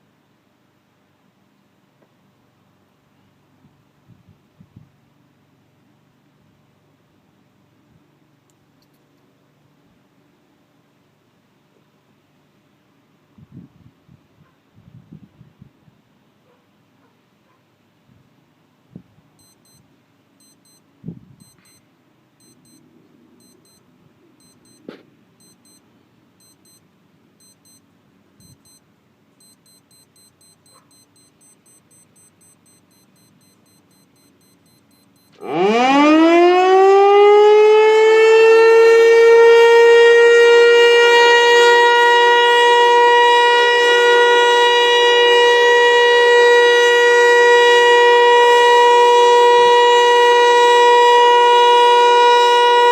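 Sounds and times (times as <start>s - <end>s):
warning siren winding up: 29.4s - 52.9s.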